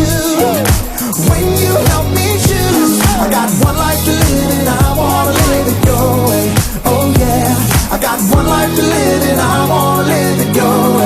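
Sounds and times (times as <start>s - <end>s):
deep kick drum: 0.0s - 8.7s
upbeat pop backing music: 0.0s - 11.0s.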